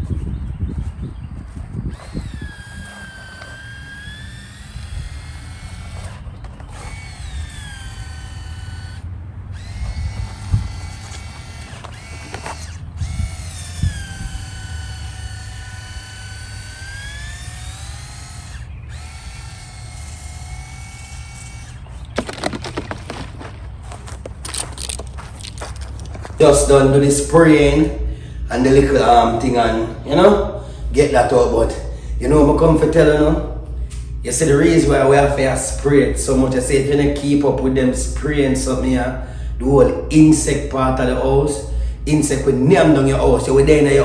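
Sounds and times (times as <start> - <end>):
small electric motor whine: 0.0 - 26.0.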